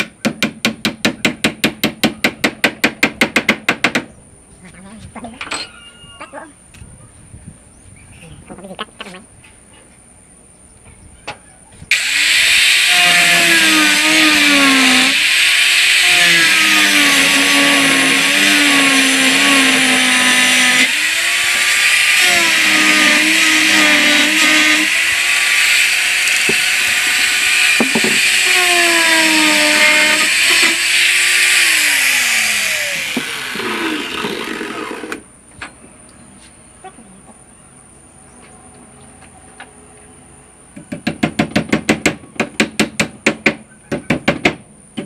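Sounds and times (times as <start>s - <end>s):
power tool cutting wood: 11.9s - 35.3s.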